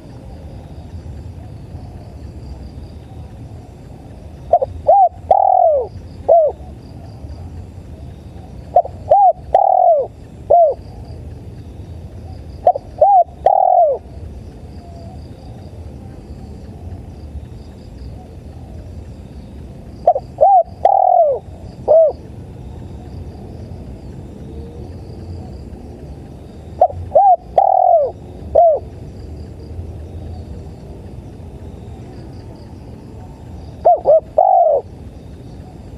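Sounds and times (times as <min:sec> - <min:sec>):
dove cooing: 0:00.0 - 0:07.5, 0:08.3 - 0:11.2, 0:12.6 - 0:14.2, 0:20.0 - 0:22.3, 0:26.8 - 0:29.0, 0:32.4 - 0:35.0
crickets chirping: 0:00.0 - 0:35.9.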